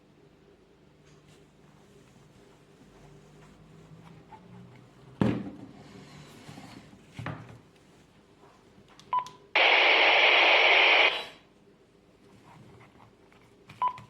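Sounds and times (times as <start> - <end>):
radio handling clicks: 9.6 - 11.3
radio key beep: 9.6 - 11.4
radio static hiss: 9.6 - 11.4.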